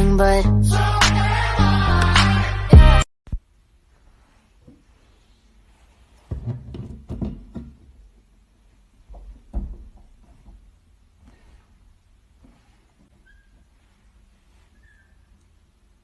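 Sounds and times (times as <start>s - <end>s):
soft knocks and thuds: 6.2s - 8.0s, 9.1s - 10.7s.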